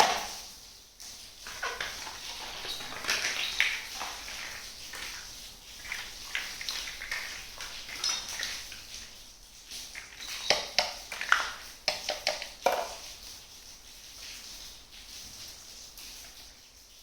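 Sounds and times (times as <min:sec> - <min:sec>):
toy kitchenware clinking: 0:01.5 - 0:05.2, 0:05.8 - 0:09.0, 0:10.0 - 0:13.0.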